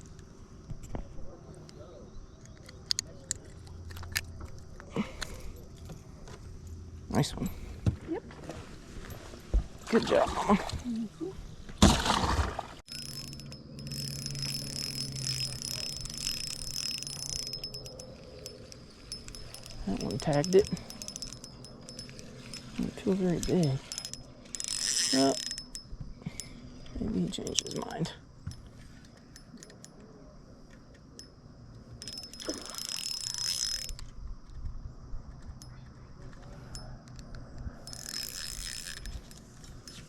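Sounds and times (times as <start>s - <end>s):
reel ticking with high whine: 12.9s - 26.0s, 32.0s - 34.1s, 37.8s - 40.0s
fishing reel clicking: 12.9s - 28.2s, 29.0s - 30.1s, 32.0s - 34.6s, 35.3s - 40.0s.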